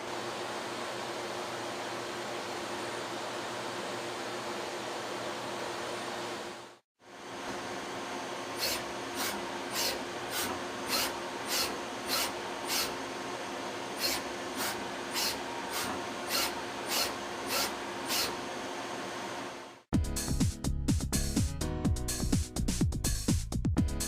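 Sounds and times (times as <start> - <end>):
lathe humming: 7.3 - 19.8.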